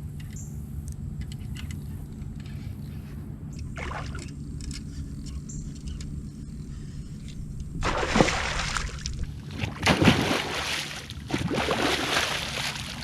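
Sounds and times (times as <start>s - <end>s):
water splashing and sloshing: 3.6s - 5.4s, 7.2s - 13.0s.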